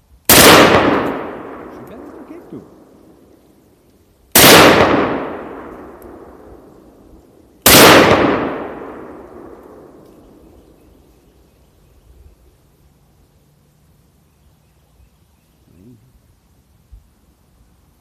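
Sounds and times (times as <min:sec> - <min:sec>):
rifle shots with echo: 0:00.3 - 0:03.3, 0:04.3 - 0:10.6.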